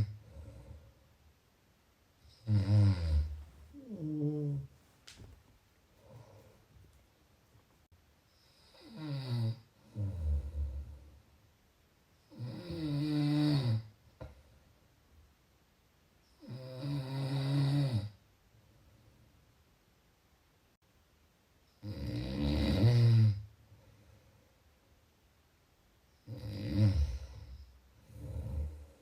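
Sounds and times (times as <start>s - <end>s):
person snoring: 2.3s - 4.7s, 12.3s - 13.9s, 21.8s - 23.4s, 26.3s - 29.0s.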